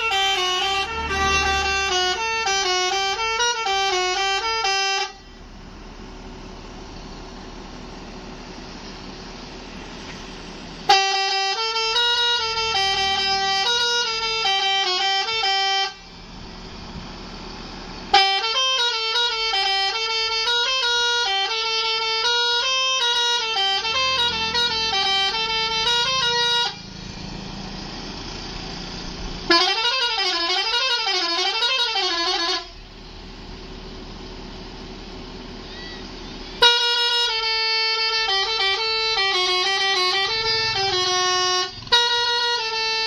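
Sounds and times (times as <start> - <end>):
musical bus horn tunes: 0.0 - 5.6, 10.8 - 16.2, 18.0 - 26.9, 29.4 - 32.9, 35.7 - 43.0.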